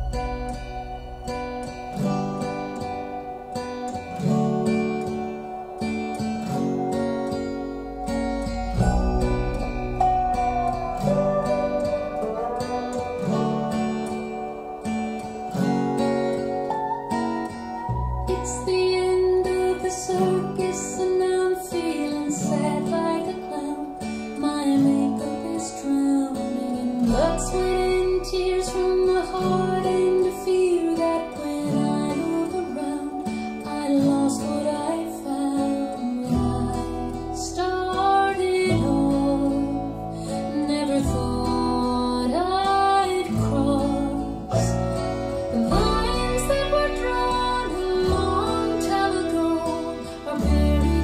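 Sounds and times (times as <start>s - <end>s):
acoustic guitar: 0.0s - 51.0s
woman singing: 18.3s - 51.0s.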